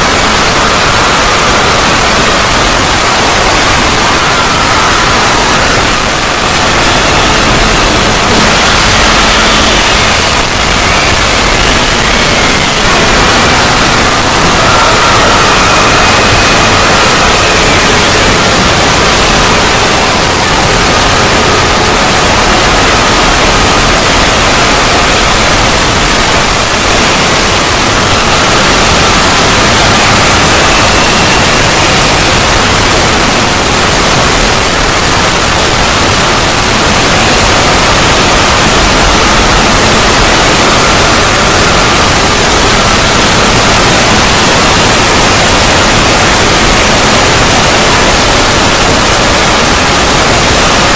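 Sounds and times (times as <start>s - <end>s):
faint high whines: 0.0s - 50.9s
loud distorted static noise: 0.0s - 50.9s.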